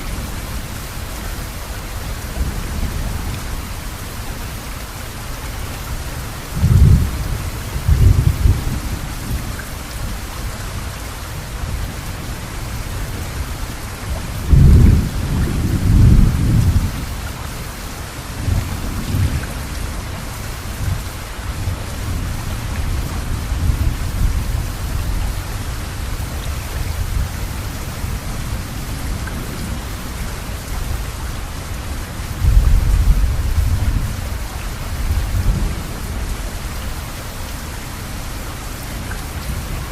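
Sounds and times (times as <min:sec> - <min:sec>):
steady rain falling: 0:00.0 - 0:39.9
thunder rumbling: 0:06.5 - 0:09.5, 0:14.4 - 0:17.1, 0:32.4 - 0:36.6.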